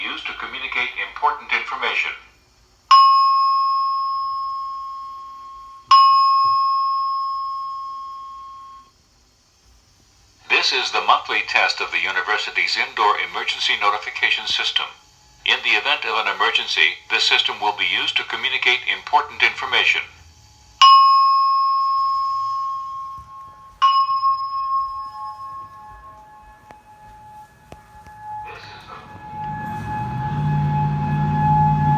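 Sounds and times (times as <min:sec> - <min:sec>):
chime tones ringing: 0:02.9 - 0:08.9, 0:15.6 - 0:31.4.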